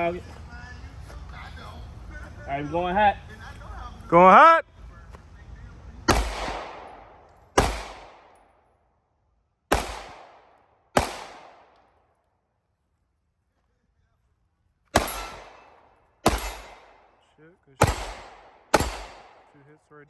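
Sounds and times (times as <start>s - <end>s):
handgun shots with echo: 6.1s - 8.5s, 9.7s - 11.9s, 15.0s - 17.2s, 17.8s - 19.5s.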